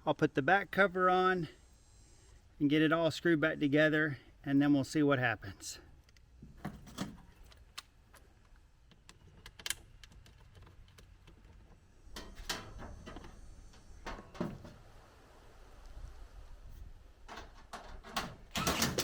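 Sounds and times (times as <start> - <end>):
scattered clicks and knocks: 6.6 - 13.2.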